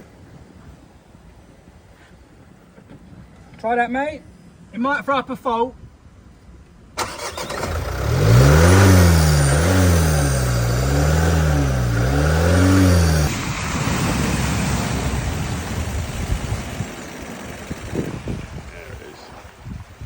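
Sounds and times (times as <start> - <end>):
car engine revving: 7.0 - 18.3.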